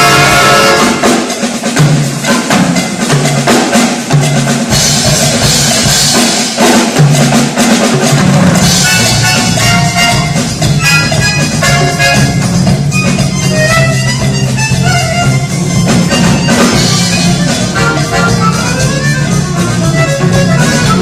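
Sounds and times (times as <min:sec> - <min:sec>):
military orchestra playing: 0:00.0 - 0:01.6, 0:08.6 - 0:21.0
bass drum and snare strokes: 0:00.0 - 0:21.0.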